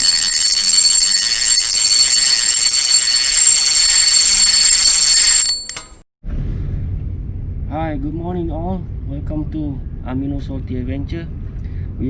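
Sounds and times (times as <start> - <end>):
high-pitched buzzing ring: 0.0 - 6.0.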